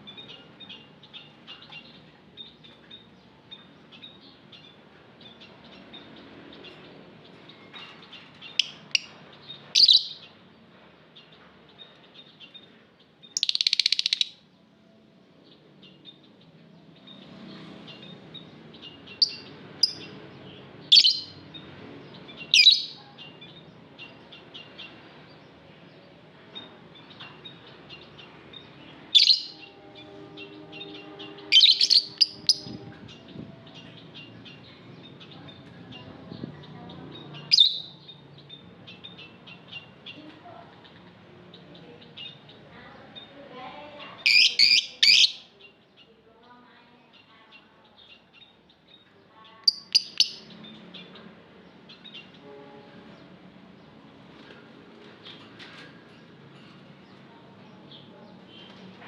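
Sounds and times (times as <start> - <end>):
lovebirds chattering: 0.0 - 14.6, 15.4 - 59.0
shrill bird chirps: 7.6 - 10.4, 11.8 - 14.5, 17.9 - 20.2, 20.8 - 21.7, 22.3 - 25.0, 26.6 - 35.5, 37.4 - 40.0, 44.0 - 46.1, 47.1 - 51.2.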